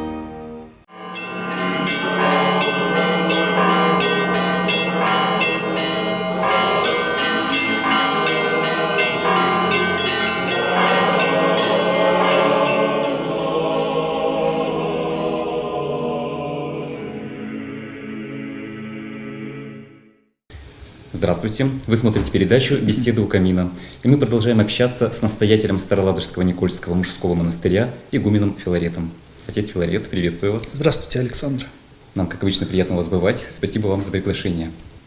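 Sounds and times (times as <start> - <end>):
church bells ringing a peal: 0.9 - 16.0
steady low tone: 1.0 - 18.0.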